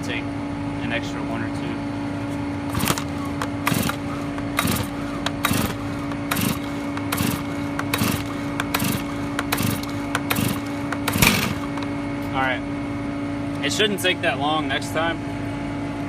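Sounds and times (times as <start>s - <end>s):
steady hum: 0.0s - 16.0s
engine turning over: 2.6s - 11.9s
chainsaw starter cord pulls: 2.7s - 11.8s.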